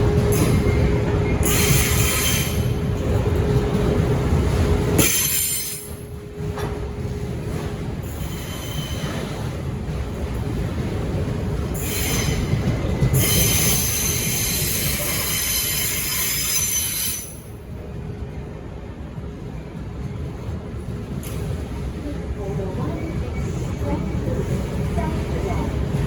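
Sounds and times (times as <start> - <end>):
freight train rumbling on rails: 0.0 - 26.0
steel wheels squealing: 0.3 - 2.7, 8.1 - 9.4, 11.8 - 17.5.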